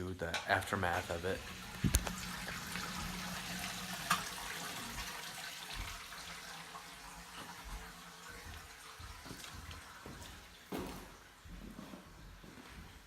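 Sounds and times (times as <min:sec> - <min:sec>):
running water rushing: 0:00.7 - 0:10.6.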